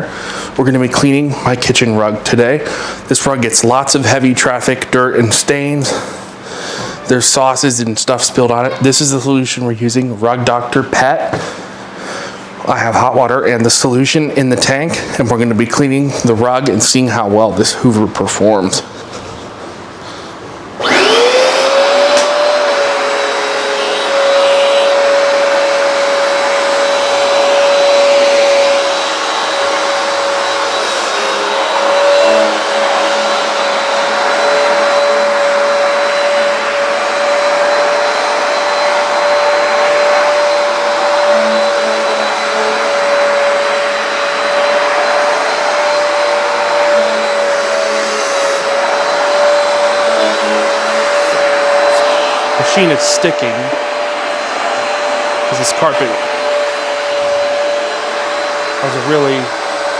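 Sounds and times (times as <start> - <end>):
carpet cleaner motor whining: 19.0 - 59.9
rushing air: 26.3 - 59.9.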